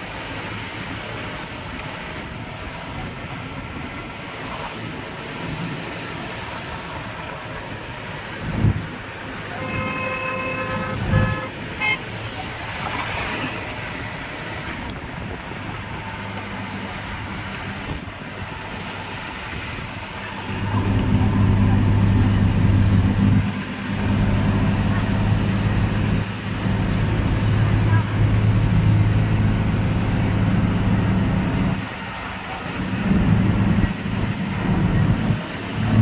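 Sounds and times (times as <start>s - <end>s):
vehicle engine humming: 0.0s - 36.0s
vehicle horn: 9.5s - 12.2s.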